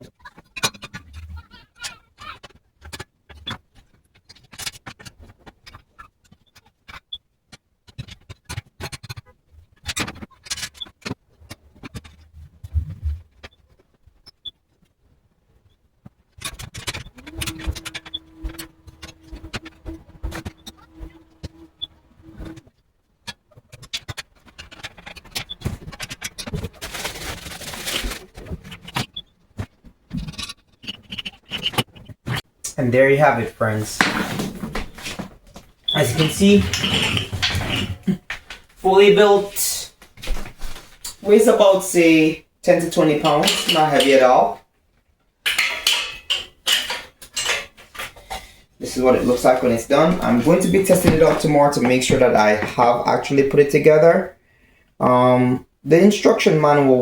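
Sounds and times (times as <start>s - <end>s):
clicks knocks and scrapes of parts: 16.0s - 32.4s, 34.0s - 38.8s, 42.7s - 44.6s, 45.5s - 52.7s
rustling: 16.3s - 32.4s, 33.2s - 44.7s, 45.4s - 53.0s
metal parts clicking and scraping: 35.9s - 39.6s, 42.7s - 44.6s, 45.5s - 52.4s.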